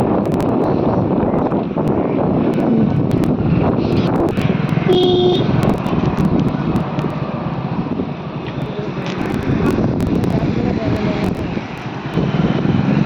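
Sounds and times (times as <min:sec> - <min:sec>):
outdoor rumbling noise: 0:00.0 - 0:13.0
short pitched tone: 0:04.9 - 0:05.6.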